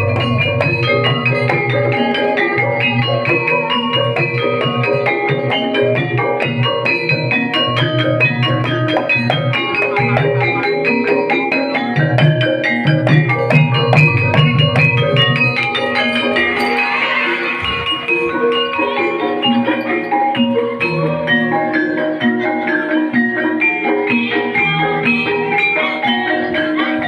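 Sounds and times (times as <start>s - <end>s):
steady drum beat: 0.0s - 18.5s
gamelan mallet instruments: 0.0s - 27.0s.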